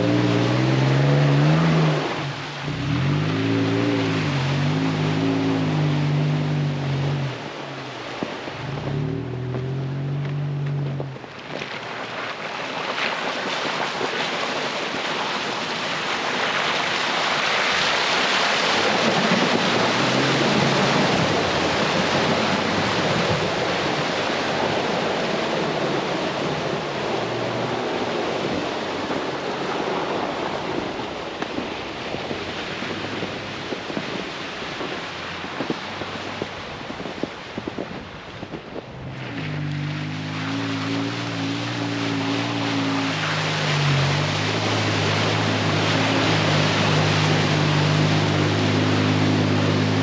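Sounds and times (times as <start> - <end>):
car engine running low: 0.0 - 12.8, 18.4 - 50.0
tyres rushing through slush: 0.0 - 50.0
wind noise: 0.0 - 50.0.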